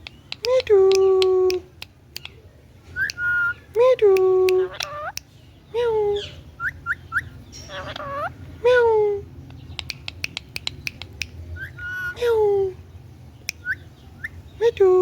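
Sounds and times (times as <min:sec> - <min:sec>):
sharp clicks: 0:00.0 - 0:02.4, 0:09.6 - 0:11.4
parrot rising chirps: 0:03.0 - 0:03.6, 0:06.2 - 0:08.4, 0:10.2 - 0:12.2
parrot calls: 0:03.0 - 0:03.7, 0:04.6 - 0:05.2, 0:06.1 - 0:08.9, 0:09.5 - 0:12.3.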